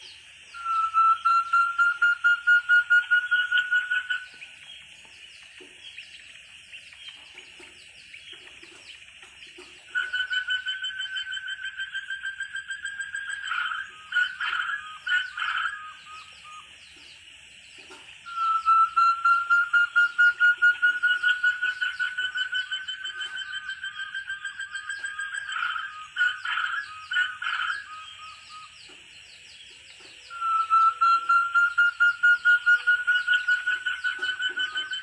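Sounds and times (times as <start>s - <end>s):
quail whistled calls: 0.5s - 4.7s, 9.6s - 17.1s, 17.8s - 35.0s
high-pitched chirping: 9.9s - 16.8s, 18.3s - 29.0s, 30.3s - 35.0s.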